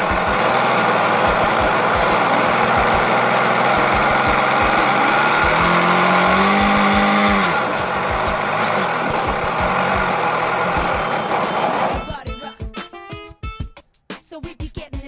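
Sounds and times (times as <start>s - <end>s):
model airplane engine running: 0.0s - 12.1s
music: 0.0s - 15.0s.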